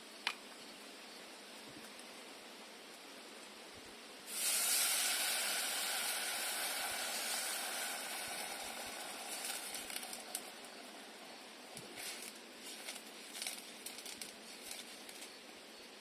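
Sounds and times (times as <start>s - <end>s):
food sizzling in a hot pan: 4.3s - 14.2s.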